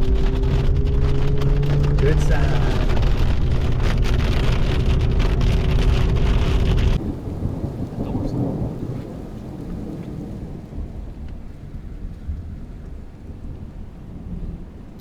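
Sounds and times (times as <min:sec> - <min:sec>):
low rumble: 0:00.0 - 0:08.6
heavy rain pattering: 0:00.0 - 0:15.0
light rain: 0:00.0 - 0:15.0.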